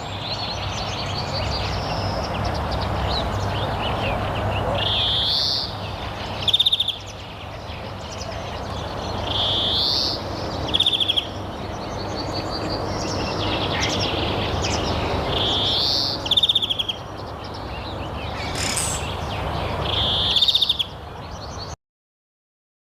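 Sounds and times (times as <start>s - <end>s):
bird whistling and trilling: 18.4s - 19.2s.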